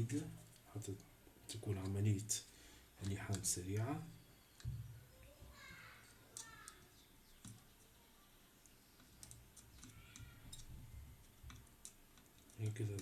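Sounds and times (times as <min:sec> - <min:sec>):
small tools clicking and tapping: 0:03.0 - 0:04.8, 0:05.4 - 0:07.9, 0:08.6 - 0:13.0.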